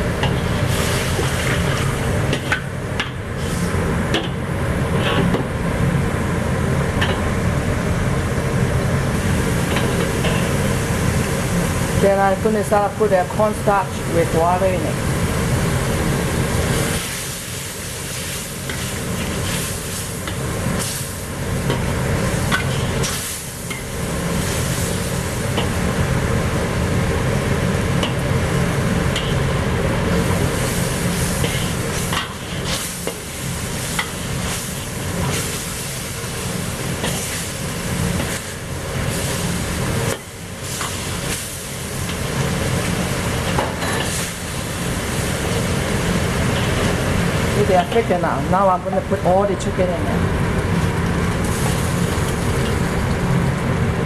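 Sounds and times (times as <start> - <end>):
sauce bubbling and sizzling: 5.6 - 12.0, 15.0 - 47.7, 50.4 - 53.8.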